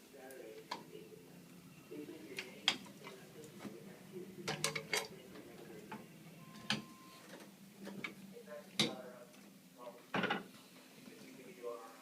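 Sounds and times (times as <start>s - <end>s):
hard objects clicking and knocking: 4.4s - 5.2s
short steady beep: 6.4s - 7.3s.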